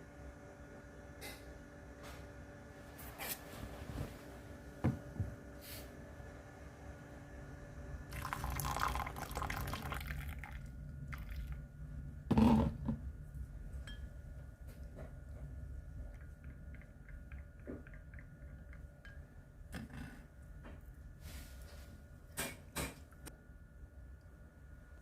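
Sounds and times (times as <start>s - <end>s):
liquid pouring into glass: 8.1s - 11.6s.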